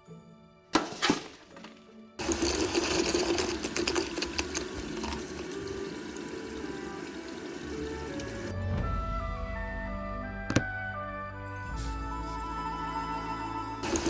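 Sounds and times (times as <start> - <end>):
water pouring and splashing: 0.8 - 8.5, 13.8 - 14.0.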